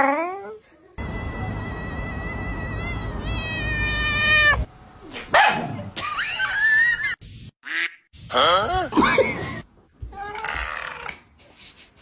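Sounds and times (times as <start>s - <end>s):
cat meowing: 1.2s - 4.7s
cat yowling: 1.2s - 4.7s.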